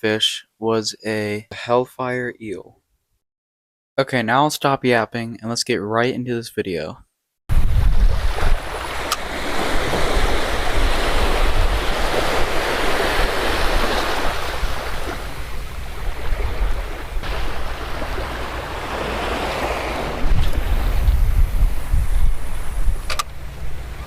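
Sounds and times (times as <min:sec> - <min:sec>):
ocean surf washing onto beach: 0:07.5 - 0:22.9
wind rumbling on microphone: 0:07.5 - 0:24.0.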